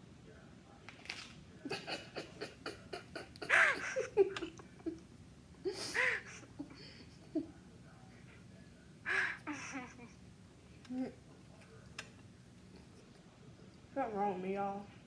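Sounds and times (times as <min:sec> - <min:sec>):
young women laughing: 0:01.7 - 0:05.0.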